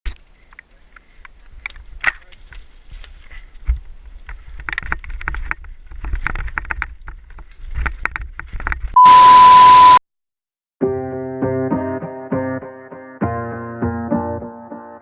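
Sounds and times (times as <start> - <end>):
steady beep tone: 9.0 - 10.0
piano music: 10.8 - 15.0.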